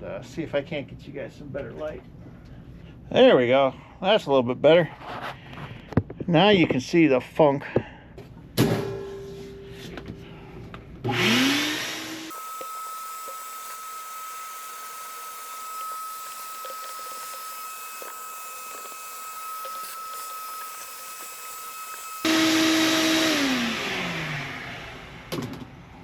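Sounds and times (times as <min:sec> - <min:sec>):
vacuum cleaner motor running: 0:11.0 - 0:25.3
vacuum motor winding down: 0:11.0 - 0:25.4.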